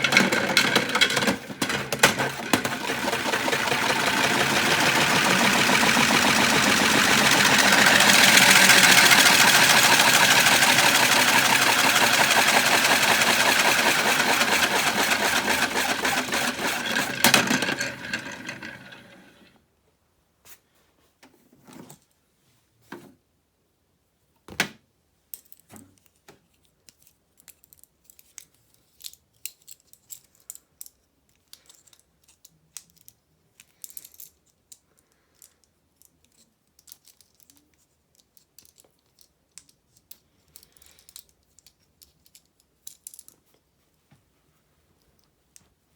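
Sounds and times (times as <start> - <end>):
objects tumbling in drum: 0.0 - 19.4
toy washing machine motor running: 0.0 - 19.5.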